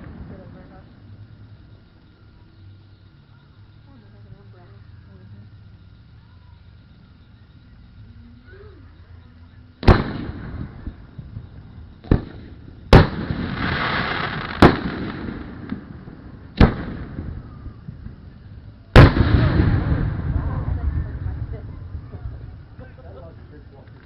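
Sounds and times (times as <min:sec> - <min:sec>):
fireworks booming: 0:00.0 - 0:01.0, 0:09.8 - 0:23.8.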